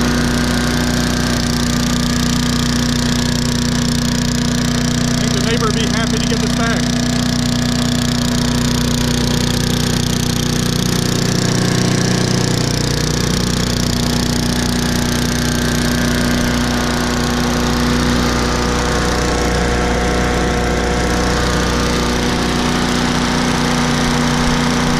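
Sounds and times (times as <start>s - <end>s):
small engine running steadily: 0.0s - 24.9s.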